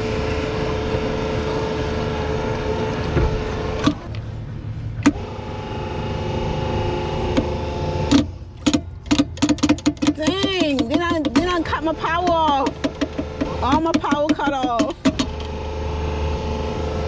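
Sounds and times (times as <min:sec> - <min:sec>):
boat motor running: 0:00.0 - 0:17.0.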